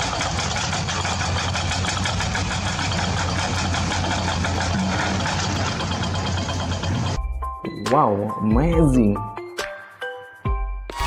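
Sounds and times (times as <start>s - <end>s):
excavator engine idling: 0.0s - 7.2s.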